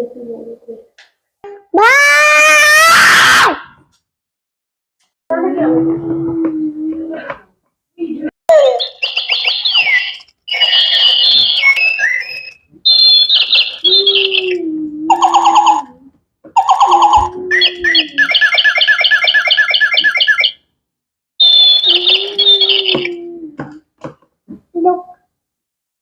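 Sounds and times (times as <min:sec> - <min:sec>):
electronic toy bird chirps: 0:08.5 - 0:14.5, 0:15.1 - 0:15.9, 0:16.6 - 0:20.6, 0:21.4 - 0:23.1.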